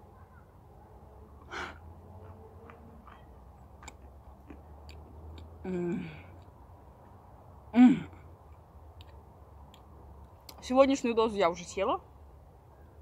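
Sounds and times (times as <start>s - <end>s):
person breathing: 1.4s - 1.9s
mouth clicks chewing: 3.0s - 5.6s.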